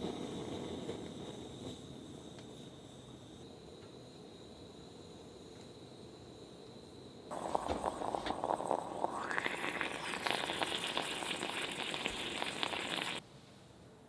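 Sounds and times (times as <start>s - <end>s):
fizzing liquid pouring into cup: 7.3s - 13.2s.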